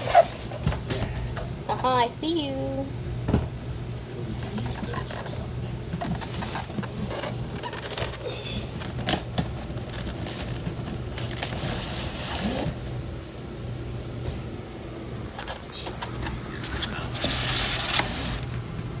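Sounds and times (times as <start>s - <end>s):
steady low hum: 0.0s - 19.0s
cardboard crackling and scraping: 4.3s - 13.1s, 15.3s - 19.0s
cardboard rustling: 4.4s - 13.0s, 15.3s - 19.0s.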